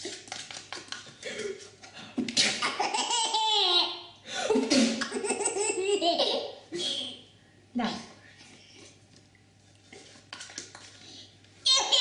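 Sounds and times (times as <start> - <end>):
baby laughing: 2.6 - 4.1, 5.0 - 6.6.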